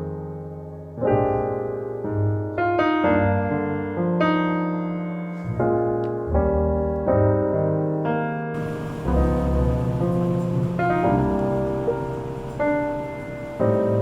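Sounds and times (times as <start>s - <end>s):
slow gentle piano chords: 0.0s - 14.0s.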